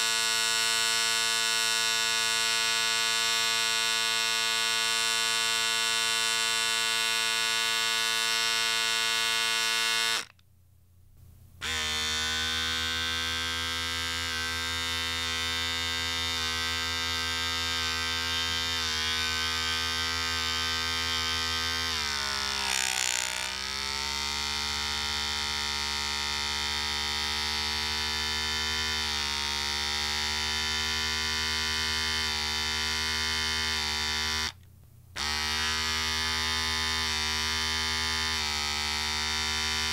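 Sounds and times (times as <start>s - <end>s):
electric shaver buzzing: 0.0s - 10.4s, 11.6s - 34.6s, 35.2s - 39.9s.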